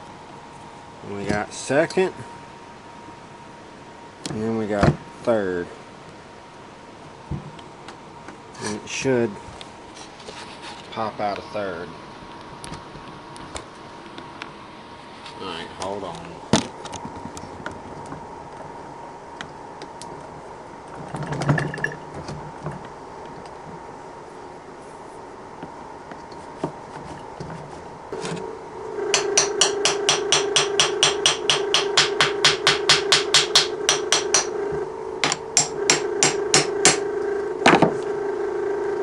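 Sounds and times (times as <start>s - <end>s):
steady hum: 0.0s - 39.0s.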